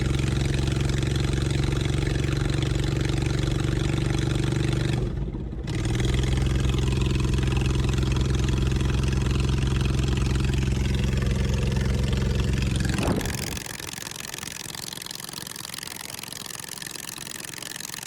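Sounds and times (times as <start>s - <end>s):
lawn mower engine running: 0.0s - 18.0s.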